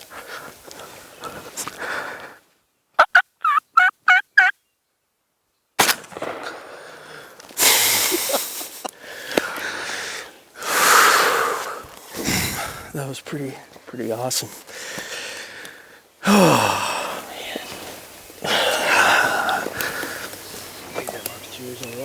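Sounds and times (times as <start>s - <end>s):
turkey calling: 3.0s - 4.6s.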